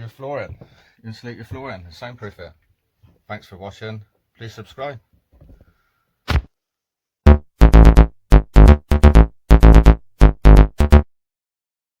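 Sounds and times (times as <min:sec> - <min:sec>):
punchy synthesizer music with bass: 0:07.3 - 0:11.1.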